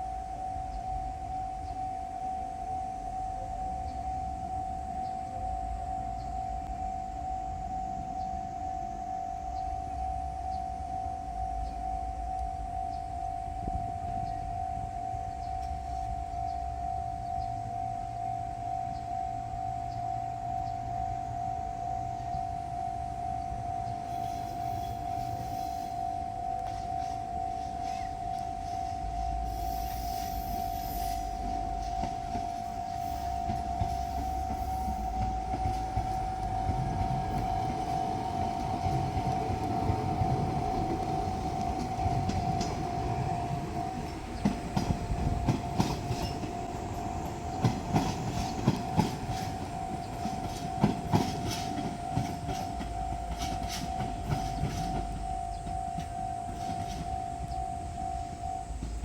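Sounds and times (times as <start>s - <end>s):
diesel train rumbling past: 0.0s - 59.0s
level-crossing warning bell: 0.0s - 59.0s
train wheels clicking on rail joints: 22.1s - 59.0s.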